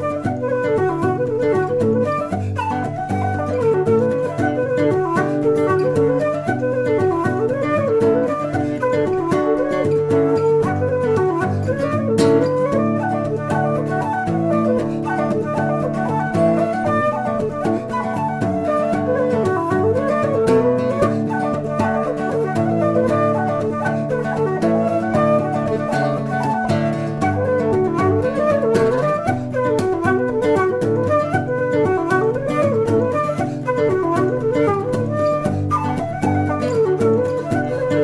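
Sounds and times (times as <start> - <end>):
flute melody: 0.0 - 38.0
plucked acoustic guitar: 0.0 - 38.0.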